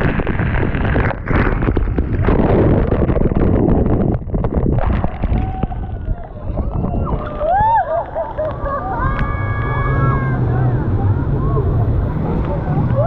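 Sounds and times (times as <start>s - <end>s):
wind buffeting microphone: 0.0s - 13.0s
motorboat engine: 7.6s - 13.0s.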